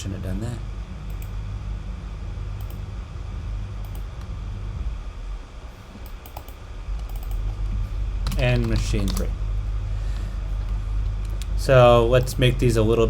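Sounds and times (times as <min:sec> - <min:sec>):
fan hum: 0:00.0 - 0:13.0
faint clicks: 0:01.0 - 0:01.4, 0:02.6 - 0:02.8, 0:03.8 - 0:04.4, 0:05.9 - 0:09.3, 0:10.2 - 0:11.6.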